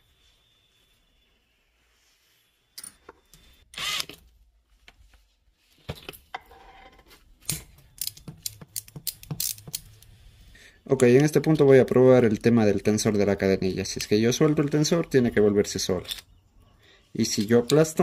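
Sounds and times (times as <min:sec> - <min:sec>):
metal tools and parts clinking: 0:02.8 - 0:03.4, 0:06.6 - 0:10.1, 0:15.9 - 0:16.4.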